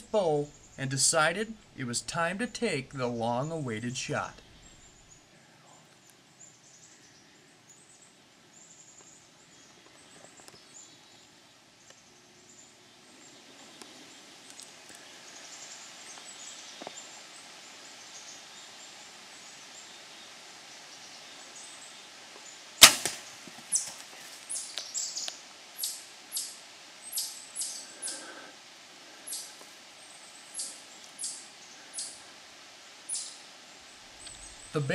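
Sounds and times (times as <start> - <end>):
faint outdoor hiss: 0.0 - 34.9
bow string crack: 22.8 - 24.0.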